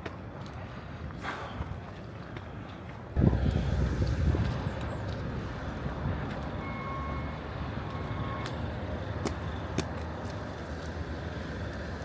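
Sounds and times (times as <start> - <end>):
wind buffeting microphone: 3.1 - 6.6
faint beep: 6.6 - 8.6.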